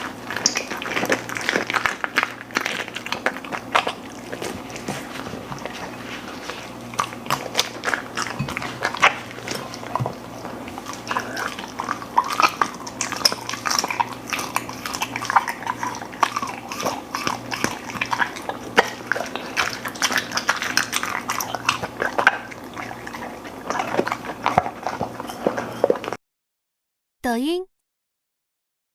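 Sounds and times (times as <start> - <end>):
wet mouth sounds: 0.0 - 5.9
dog chewing and crunching food: 0.0 - 26.2.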